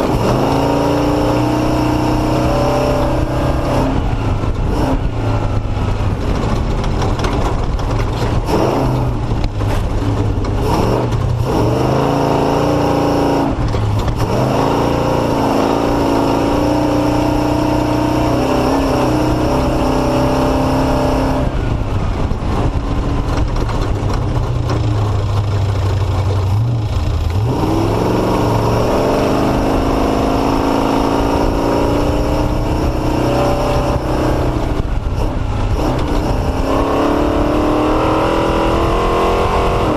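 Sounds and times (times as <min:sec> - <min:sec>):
engine revving: 0:00.0 - 0:39.9
sharp knocks and rattles: 0:06.1 - 0:11.5, 0:22.4 - 0:27.5.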